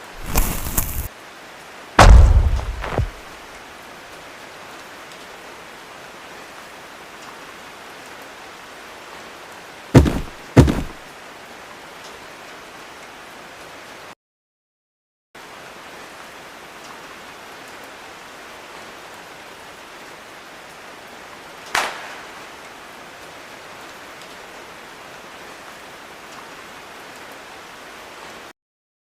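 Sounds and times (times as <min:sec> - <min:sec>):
steady hiss of falling rain: 0:00.0 - 0:14.2, 0:15.4 - 0:28.5
sharp loud hit: 0:02.0 - 0:03.2.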